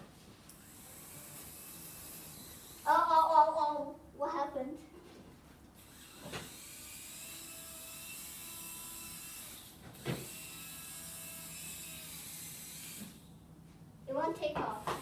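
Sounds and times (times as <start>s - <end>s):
small electric motor whirring: 0.6s - 3.0s, 5.8s - 13.3s.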